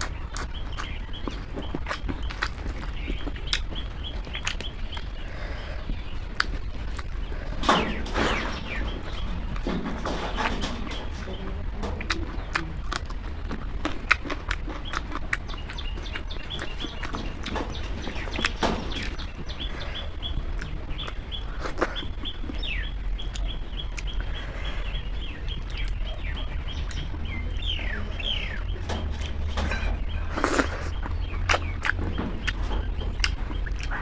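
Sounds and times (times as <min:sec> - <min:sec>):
chewing and lip smacks: 0:00.0 - 0:05.2, 0:05.9 - 0:07.3, 0:11.9 - 0:24.4, 0:30.0 - 0:34.0
bird chirping: 0:00.0 - 0:34.0
steady low hum: 0:00.0 - 0:34.0.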